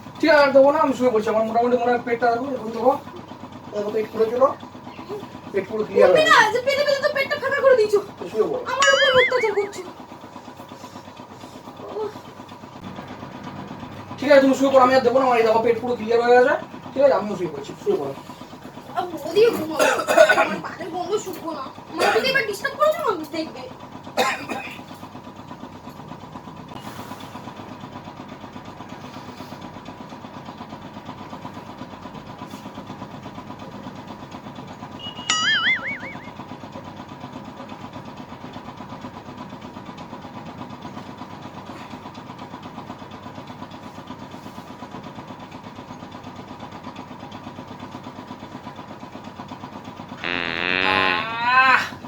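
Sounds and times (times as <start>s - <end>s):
high-pitched wavering whistle: 8.8s - 9.9s, 35.0s - 36.4s
loud wavering sound: 8.8s - 9.9s, 35.0s - 36.4s.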